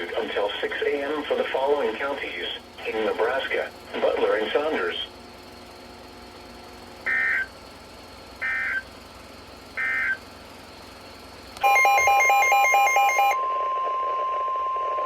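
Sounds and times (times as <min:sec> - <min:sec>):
steady warning alarm tone: 0:07.0 - 0:07.5, 0:08.4 - 0:08.9, 0:09.8 - 0:10.2, 0:11.6 - 0:15.0.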